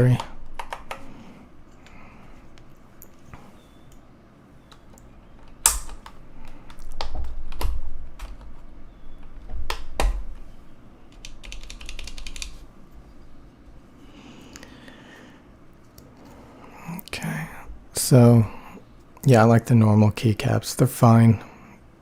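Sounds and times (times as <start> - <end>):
keycaps clacking: 0.0 - 1.1, 4.6 - 10.4, 11.1 - 12.6
keyboard keystrokes: 0.2 - 1.0, 11.1 - 12.6.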